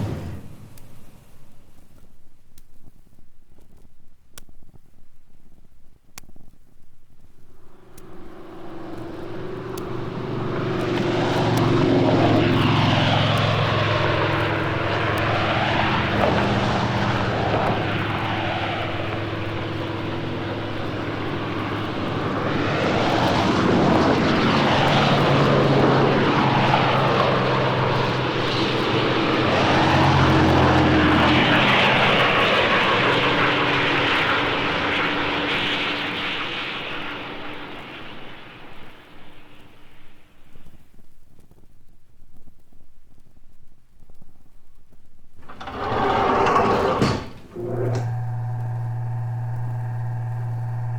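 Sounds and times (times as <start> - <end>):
propeller airplane engine: 0.0 - 1.3, 7.7 - 39.2, 45.4 - 50.9.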